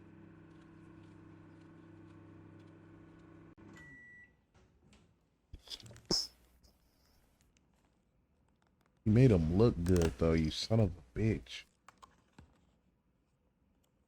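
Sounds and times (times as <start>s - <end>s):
microwave oven humming: 0.0s - 4.5s
microwave beep: 3.6s - 4.5s.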